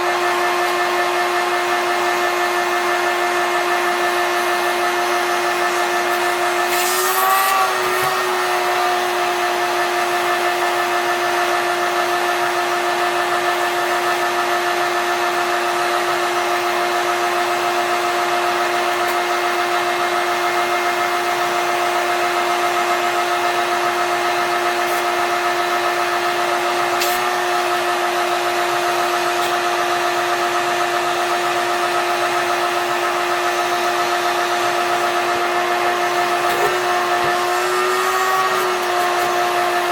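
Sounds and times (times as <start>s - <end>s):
shop vac motor whining: 0.0s - 39.9s.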